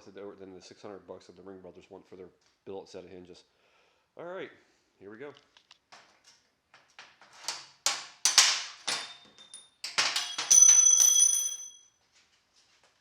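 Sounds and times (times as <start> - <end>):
metal tools clanking: 7.4 - 11.8.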